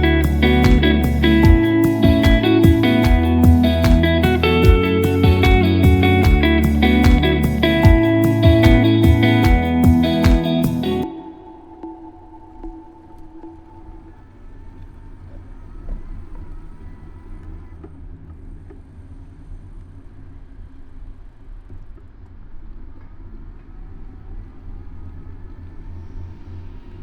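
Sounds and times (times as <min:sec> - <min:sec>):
city traffic rumble: 0:00.0 - 0:11.0.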